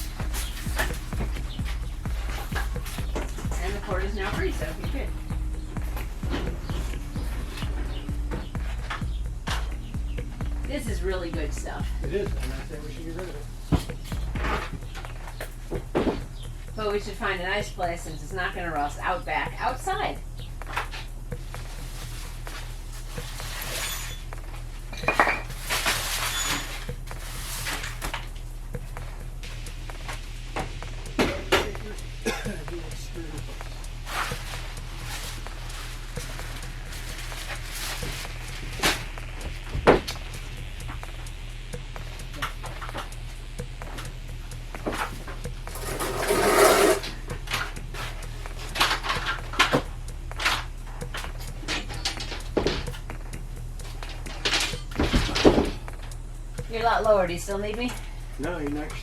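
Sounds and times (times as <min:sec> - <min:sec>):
rustling: 0:00.0 - 0:17.0, 0:20.2 - 0:59.0
low hum: 0:00.0 - 0:59.0
metal objects clinking: 0:21.6 - 0:28.4, 0:42.2 - 0:56.2.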